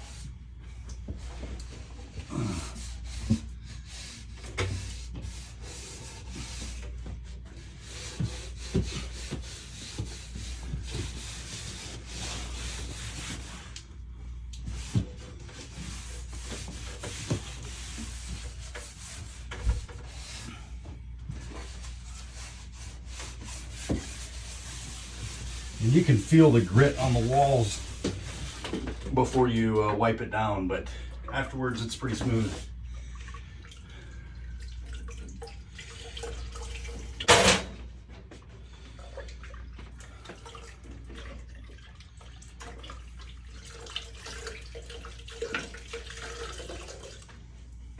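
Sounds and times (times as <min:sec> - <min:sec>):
damp cloth rubbing on wall: 0:00.0 - 0:29.3, 0:32.0 - 0:32.7.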